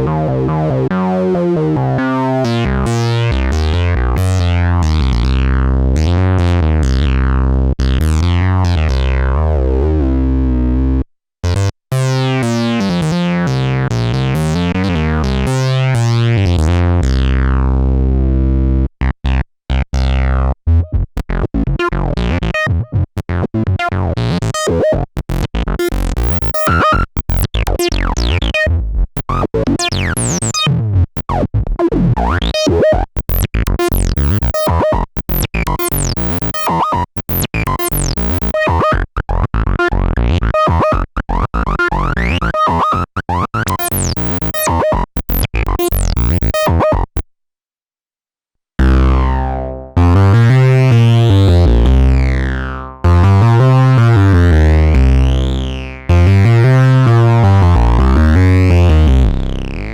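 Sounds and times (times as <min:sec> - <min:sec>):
synthesizer bass sequence: 0:00.0 - 0:11.0, 0:24.0 - 0:47.2, 0:48.8 - 0:59.9
staccato synthesizer notes: 0:25.8 - 0:28.5, 0:29.2 - 0:31.4, 0:32.2 - 0:47.2.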